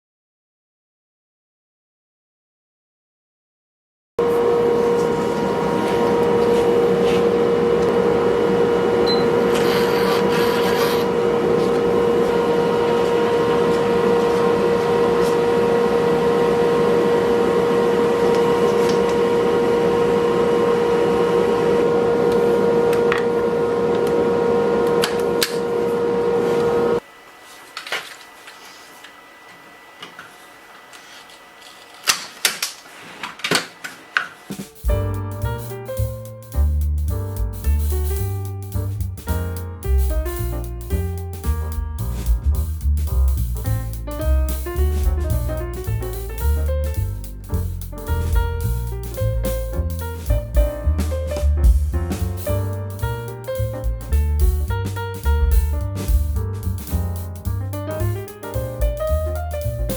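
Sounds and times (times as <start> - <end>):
machine motor humming: 4.2 - 27.0.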